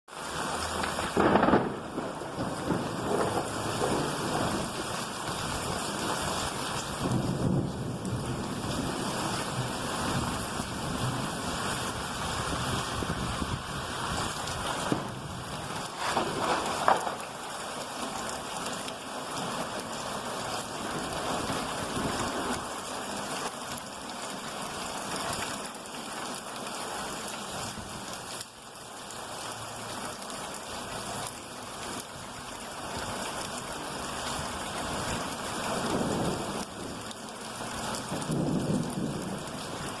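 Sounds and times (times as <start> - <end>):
steady rain: 0.1 - 40.0
thunder rolling: 1.0 - 11.4, 14.5 - 17.4, 35.8 - 37.0, 38.1 - 40.0.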